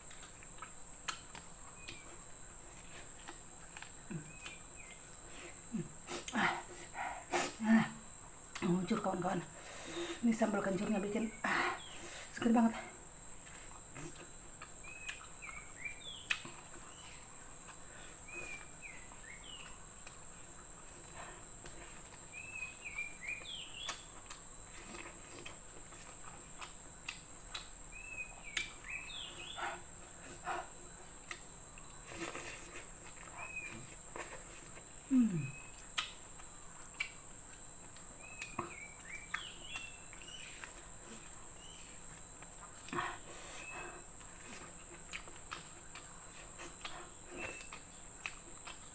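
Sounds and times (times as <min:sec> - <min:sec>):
small eating clicks: 0:00.0 - 0:07.7, 0:08.4 - 0:48.9
insects droning: 0:00.0 - 0:48.9
bird chirps: 0:22.3 - 0:24.1, 0:27.9 - 0:29.8, 0:38.2 - 0:40.7.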